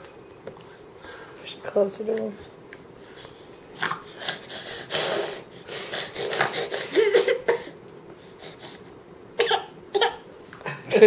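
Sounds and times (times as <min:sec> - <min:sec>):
baby grunting: 0:03.8 - 0:07.7, 0:09.4 - 0:10.2.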